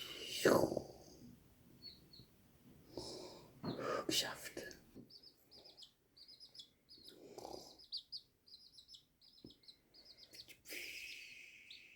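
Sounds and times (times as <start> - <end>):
chicks peeping softly: 0.1 - 11.9.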